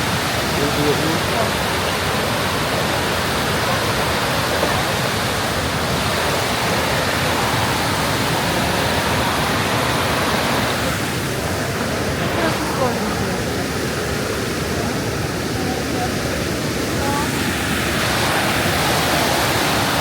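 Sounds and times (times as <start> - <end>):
waterfall rushing: 0.0 - 20.0.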